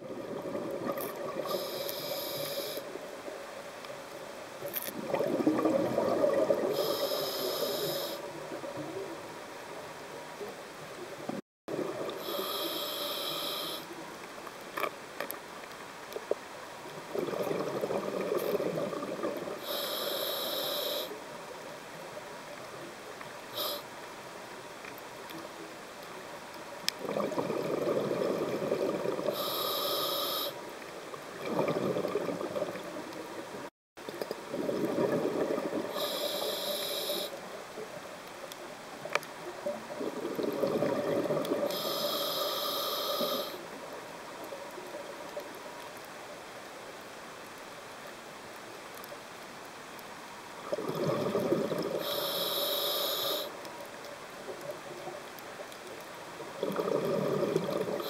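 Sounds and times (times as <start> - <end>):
diver inhaling through regulator: 1.4 - 2.9, 6.6 - 8.3, 12.2 - 13.9, 19.6 - 21.2, 23.5 - 23.9, 29.2 - 30.6, 35.9 - 37.4, 41.5 - 43.7, 51.8 - 53.6
rush of bubbles: 5.0 - 6.8, 17.1 - 19.6, 27.0 - 29.4, 31.4 - 33.0, 34.1 - 36.1, 39.8 - 41.8, 50.6 - 52.1, 56.6 - 58.0.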